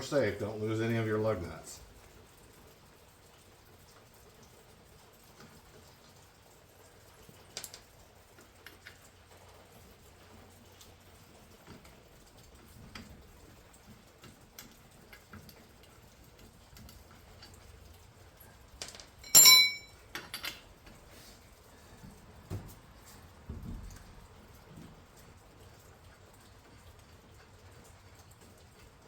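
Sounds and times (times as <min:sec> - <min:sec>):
metal hardware clicks: 0:18.8 - 0:20.7
small metal knocks: 0:18.8 - 0:21.0
ringing metallic clank: 0:19.2 - 0:20.0.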